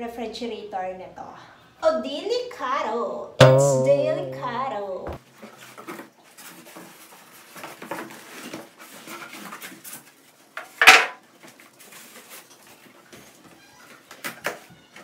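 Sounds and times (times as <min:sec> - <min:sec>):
loud sharp knock: 0:03.4 - 0:04.6.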